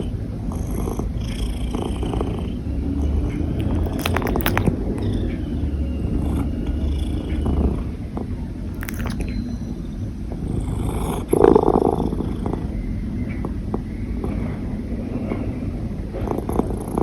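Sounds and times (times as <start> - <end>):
cat purring: 0.0 - 9.4, 10.3 - 12.8, 16.2 - 17.0.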